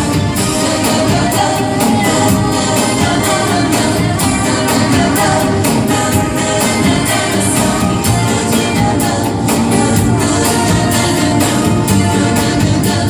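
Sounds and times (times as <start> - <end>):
old song with singing and beat: 0.0 - 13.0.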